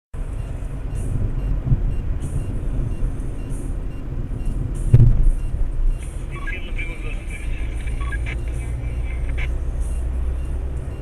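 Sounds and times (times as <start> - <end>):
car engine rumble: 0.2 - 11.0
road noise: 0.2 - 11.0
sharp thump: 4.9 - 5.3.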